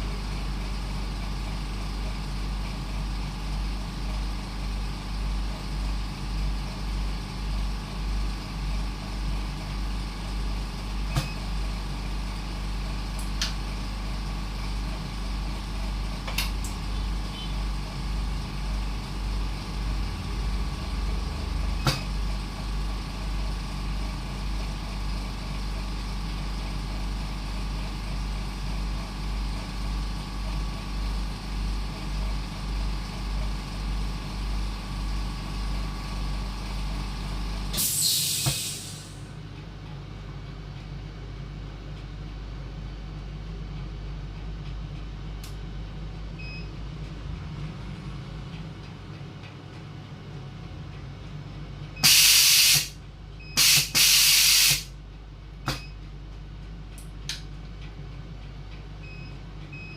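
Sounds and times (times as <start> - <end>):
engine running: 14.9 - 26.2.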